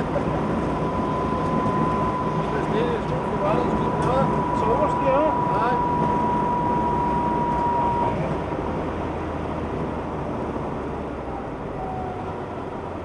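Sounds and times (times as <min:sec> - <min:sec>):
thin high whine: 0:00.0 - 0:09.2
car engine and road noise: 0:00.0 - 0:13.0.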